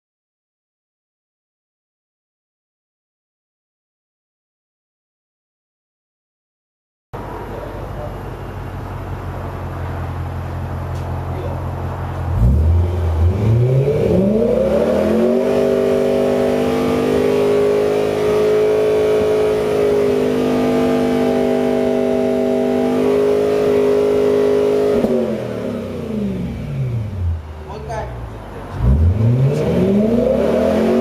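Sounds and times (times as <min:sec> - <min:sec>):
car engine revving: 0:07.2 - 0:31.0.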